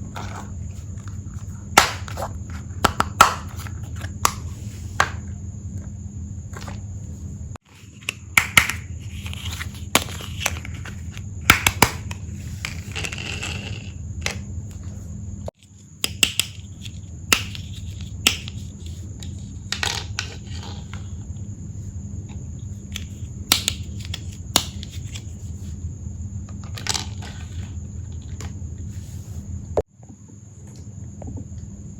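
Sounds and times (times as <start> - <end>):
steady low hum: 0.0 - 31.9.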